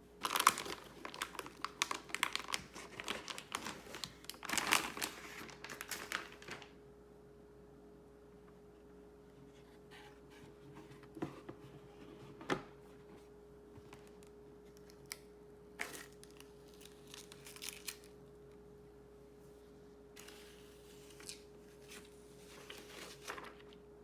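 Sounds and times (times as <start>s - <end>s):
faint steady hum: 0.0s - 24.0s
packaging rustling: 0.2s - 6.8s, 15.8s - 18.1s, 20.2s - 23.8s.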